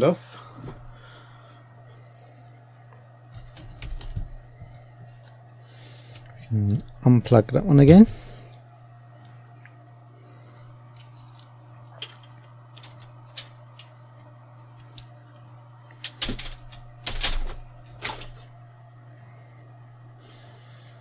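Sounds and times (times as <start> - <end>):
steady low hum: 0.0 - 21.0
clatter of plastic parts: 11.3 - 13.6, 16.0 - 18.4.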